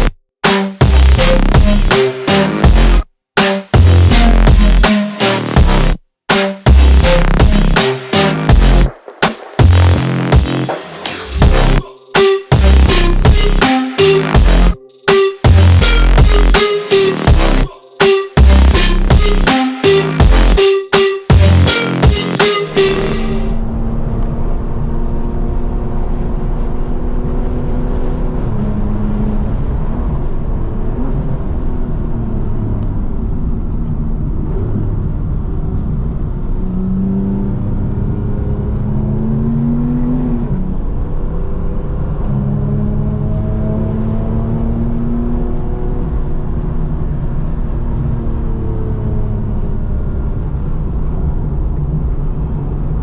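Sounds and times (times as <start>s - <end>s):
car engine accelerating through gears: 34.3s - 50.6s.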